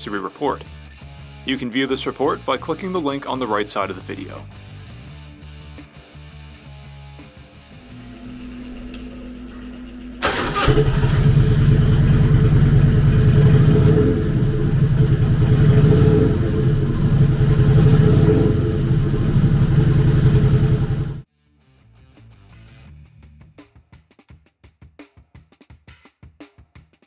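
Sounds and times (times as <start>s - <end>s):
electric starter whirring: 7.9s - 21.2s
motorcycle engine running: 7.9s - 21.2s.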